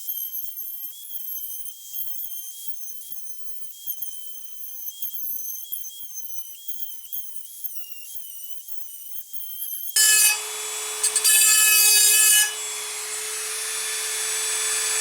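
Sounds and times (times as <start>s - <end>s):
high-speed grinder whining: 10.0s - 15.0s.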